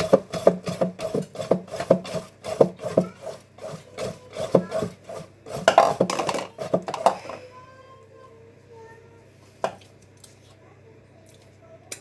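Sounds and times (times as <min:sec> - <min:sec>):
hand whisk beating batter: 0:00.0 - 0:07.4
whisk clattering in bowl: 0:00.0 - 0:07.4.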